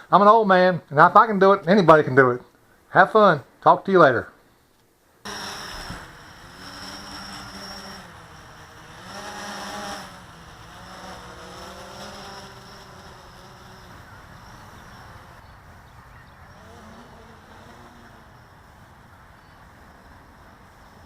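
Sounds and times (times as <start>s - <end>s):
quadcopter propellers buzzing: 5.2s - 21.0s.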